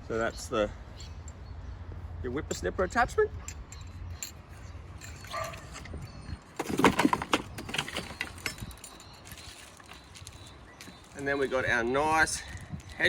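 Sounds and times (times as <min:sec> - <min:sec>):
rustles and clicks: 0:03.5 - 0:11.3
unpacking knocks and rattles: 0:06.6 - 0:10.3.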